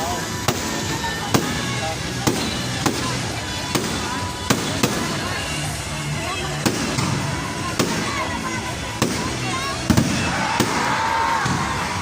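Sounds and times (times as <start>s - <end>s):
fireworks bangs: 2.3s - 5.4s, 9.0s - 12.0s.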